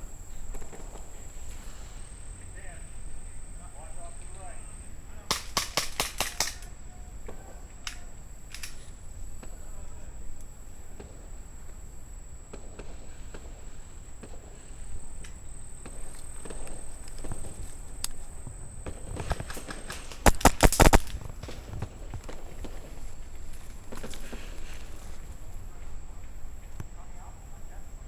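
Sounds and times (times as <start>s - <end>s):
airsoft gunfire burst: 5.2s - 9.8s, 18.8s - 23.2s.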